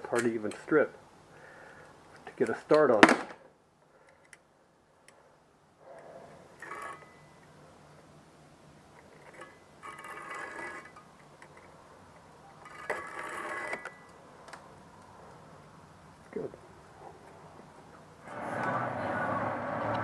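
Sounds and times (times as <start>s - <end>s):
wire scraping through stripper: 6.6s - 7.2s, 9.0s - 11.6s, 12.6s - 14.2s.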